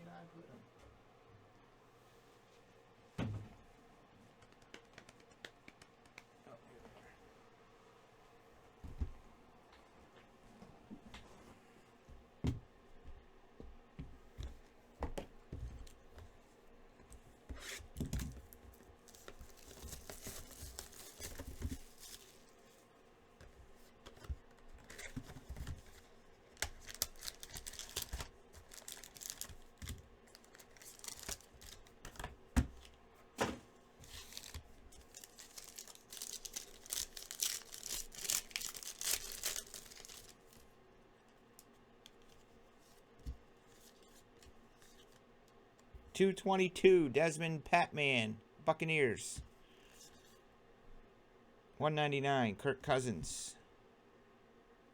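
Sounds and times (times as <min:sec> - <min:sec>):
packaging tearing and crinkling: 0:19.0 - 0:22.5, 0:26.5 - 0:32.0, 0:34.0 - 0:40.6.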